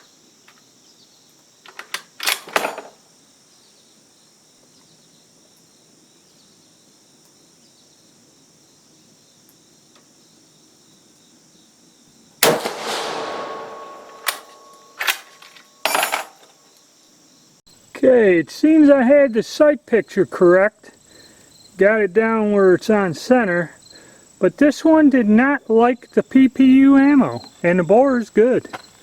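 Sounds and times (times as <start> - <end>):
rifle shot echoing: 12.4 - 15.4
sharp metallic clicks: 12.4 - 15.5.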